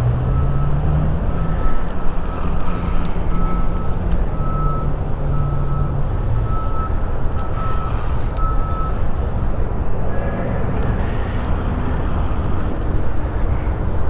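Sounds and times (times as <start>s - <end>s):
vehicle reversing alarm beeping: 0.0s - 9.5s
low rumble of traffic: 0.0s - 14.0s.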